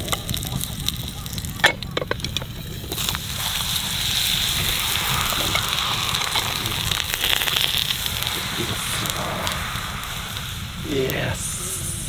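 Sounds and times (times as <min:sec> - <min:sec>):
small pops from fire: 0:00.0 - 0:11.6
campfire crackling: 0:00.0 - 0:12.0.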